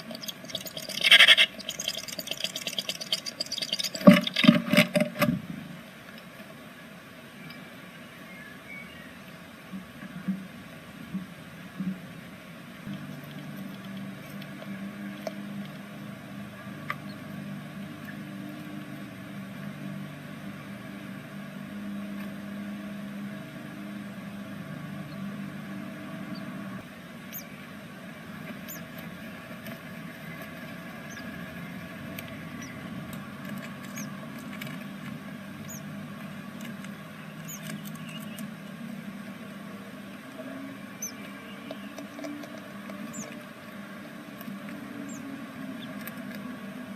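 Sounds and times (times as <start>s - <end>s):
nestlings squeaking: 0.0s - 4.6s, 28.6s - 29.0s, 32.3s - 34.6s, 35.5s - 36.0s, 36.6s - 38.6s, 41.0s - 43.4s
steady low hum: 0.0s - 46.9s.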